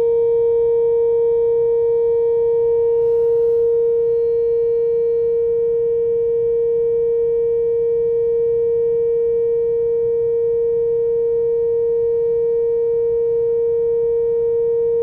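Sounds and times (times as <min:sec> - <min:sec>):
steady outdoor warning siren: 0:02.4 - 0:10.3.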